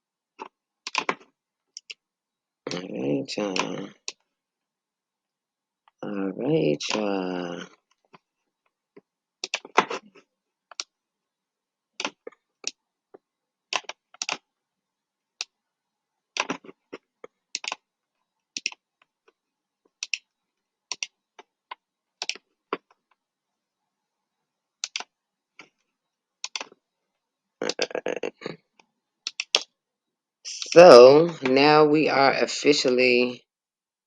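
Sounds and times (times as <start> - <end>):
mouse and keyboard clicks: 0.4 - 2.0, 3.5 - 4.2, 9.4 - 10.0, 10.7 - 10.9, 12.0 - 12.8, 13.7 - 14.4, 16.3 - 17.8, 18.5 - 19.1, 20.0 - 20.3, 20.9 - 23.0, 24.8 - 25.8, 26.4 - 26.8, 29.2 - 29.7.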